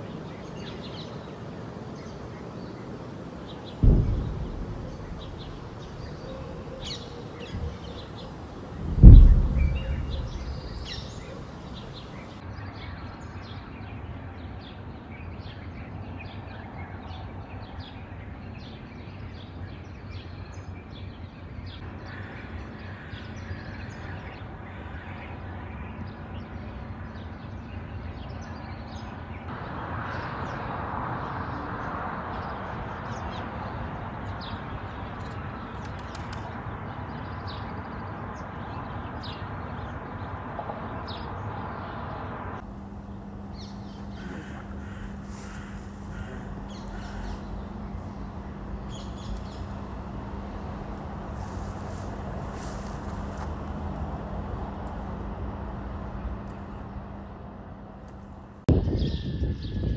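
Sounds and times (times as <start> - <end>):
birds chirping: 3.6 - 12.4, 42.8 - 53.6
distant explosion boom: 3.8 - 12.1.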